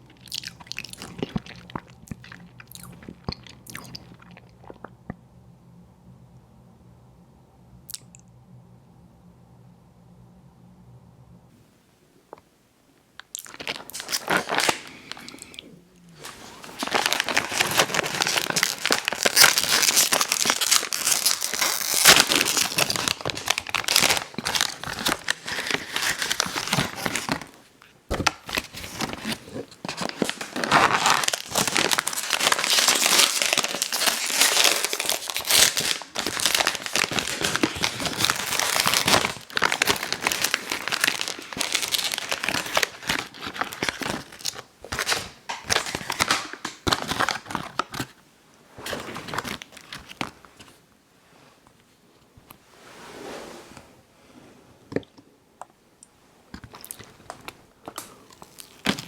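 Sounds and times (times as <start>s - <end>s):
wrapper crinkling and tearing: 13.3s - 15.5s, 16.2s - 48.2s, 48.8s - 50.7s, 56.7s - 59.0s.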